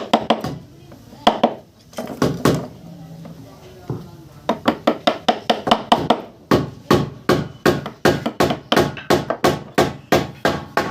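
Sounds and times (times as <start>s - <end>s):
hammer striking wood: 0.0s - 0.6s, 4.5s - 10.9s.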